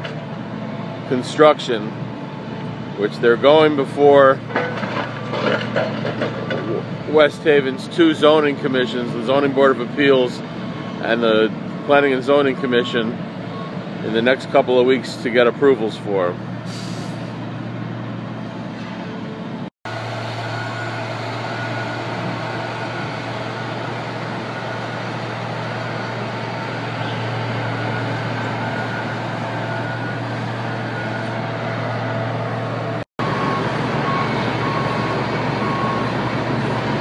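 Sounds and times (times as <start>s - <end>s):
excavator engine humming: 0.0s - 37.0s
machinery noise: 0.0s - 37.0s.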